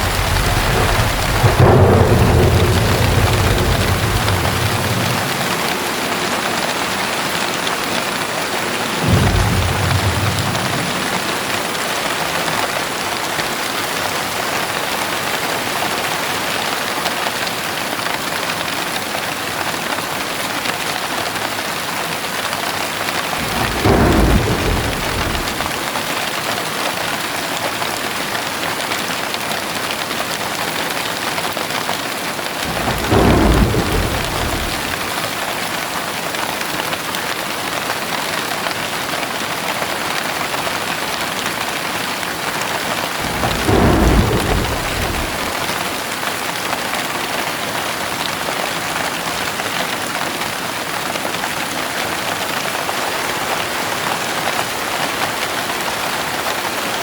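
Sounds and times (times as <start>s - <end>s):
thunder rolling: 0.0s - 13.2s, 23.2s - 26.1s, 32.6s - 35.6s, 42.9s - 46.3s
heavy rain: 0.0s - 57.0s.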